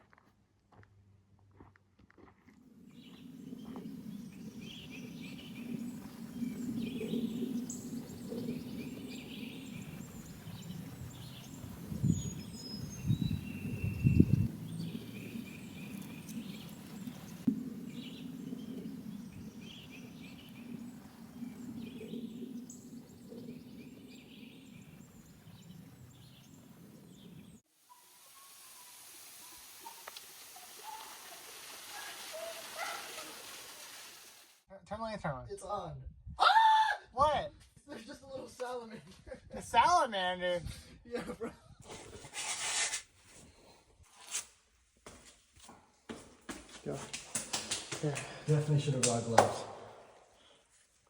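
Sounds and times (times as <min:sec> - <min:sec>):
steady low rumble: 0:02.7 - 0:27.6
birds chirping and whistling: 0:02.9 - 0:27.6.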